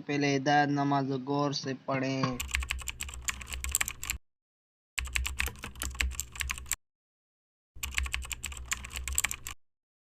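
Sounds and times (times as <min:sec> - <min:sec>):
fast keyboard typing: 0:02.4 - 0:04.2, 0:05.0 - 0:06.8, 0:07.8 - 0:09.6.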